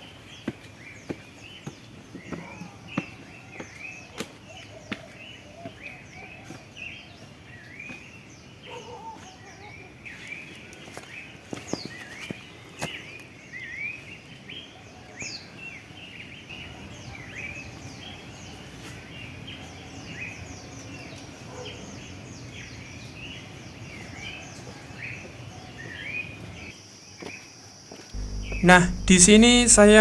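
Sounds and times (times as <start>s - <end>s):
birds chirping: 28.2s - 30.0s
low steady hiss: 28.2s - 30.0s.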